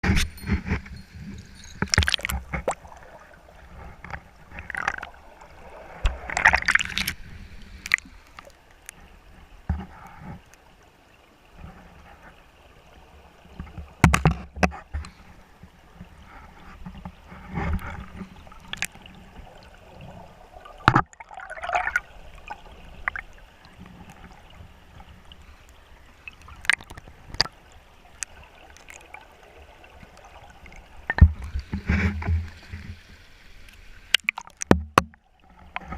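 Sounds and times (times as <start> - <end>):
water sloshing and gurgling: 0.0 - 35.9
short water splashes: 17.6 - 35.9.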